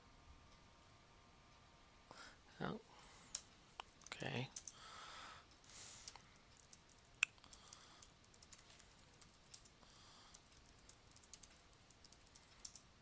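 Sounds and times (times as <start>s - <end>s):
keyboard typing: 3.3s - 4.8s, 6.0s - 13.0s.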